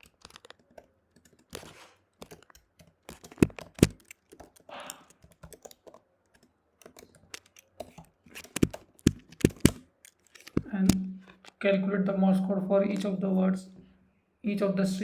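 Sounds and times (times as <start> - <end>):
typing on computer keyboard: 0.0 - 11.6.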